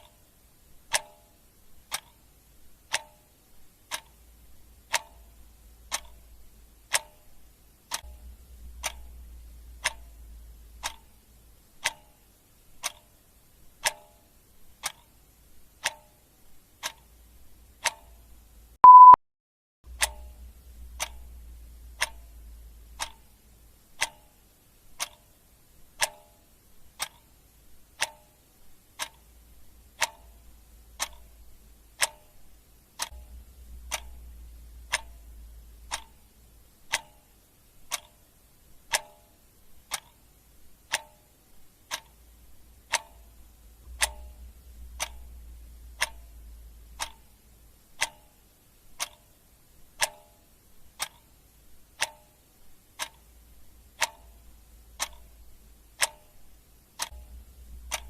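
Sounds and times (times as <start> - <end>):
clock ticking: 0.0 - 19.2, 19.9 - 58.0
short high beep: 18.8 - 19.2.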